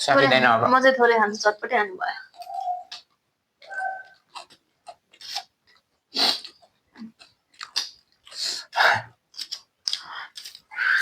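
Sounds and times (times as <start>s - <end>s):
crunchy snack chewing: 3.9s - 11.0s.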